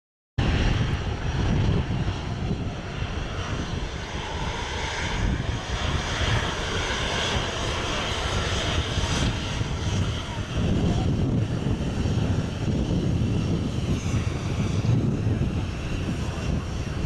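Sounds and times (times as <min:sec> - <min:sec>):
jet engines roaring: 0:00.4 - 0:17.0.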